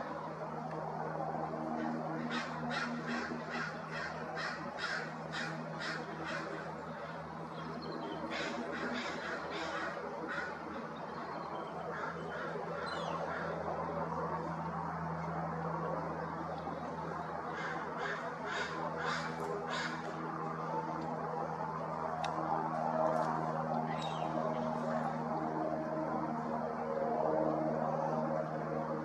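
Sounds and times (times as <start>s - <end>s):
steady low hum: 0.0s - 29.0s
crows cawing: 1.8s - 7.2s, 8.3s - 10.8s, 11.9s - 13.6s, 17.5s - 20.2s.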